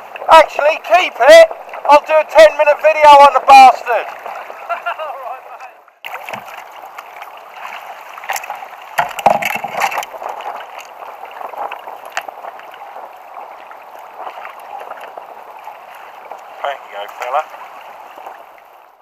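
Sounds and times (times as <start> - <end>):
water splashing against kayak: 0.0 - 19.0
knocks on boat: 6.1 - 6.6, 9.0 - 10.1.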